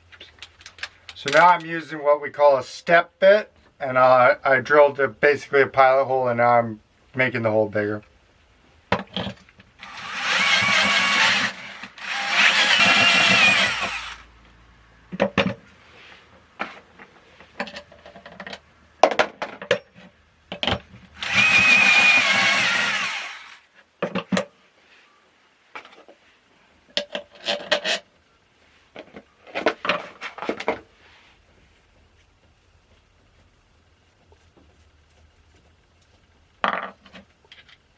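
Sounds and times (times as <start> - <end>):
power drill whining: 9.8 - 14.3, 21.2 - 23.7.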